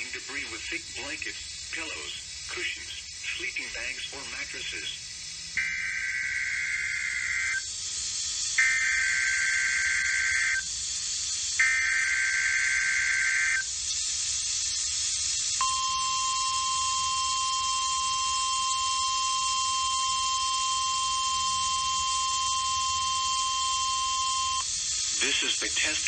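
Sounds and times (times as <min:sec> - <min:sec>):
radio hiss: 0:00.0 - 0:26.0
warbling digital data screech: 0:05.6 - 0:07.7, 0:08.6 - 0:10.7, 0:11.6 - 0:13.8
steady warning alarm tone: 0:05.6 - 0:07.8, 0:08.5 - 0:10.8, 0:11.6 - 0:13.8, 0:15.6 - 0:24.8.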